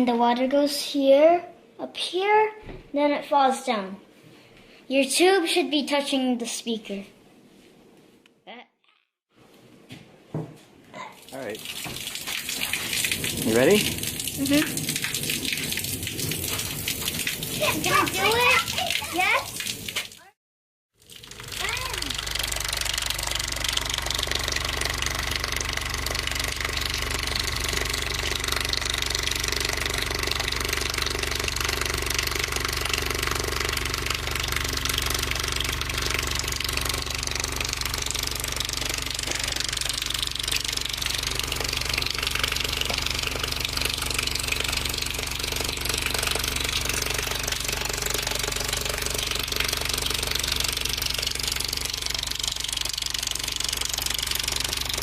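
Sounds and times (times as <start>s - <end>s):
water splashing on speaker: 11.2s - 20.4s, 21.0s - 55.0s
subwoofer deep rattling buzz: 21.3s - 55.0s.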